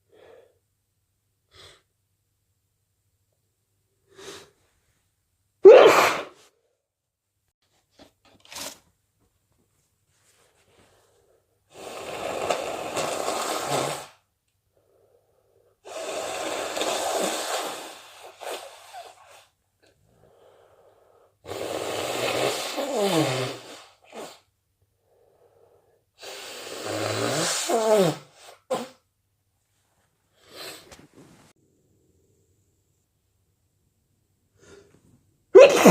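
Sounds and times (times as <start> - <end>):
person blowing nose and sneezing: 5.6 - 6.5, 11.7 - 14.3, 15.8 - 19.6, 21.4 - 24.6, 26.2 - 29.1, 30.4 - 31.2, 35.6 - 35.9.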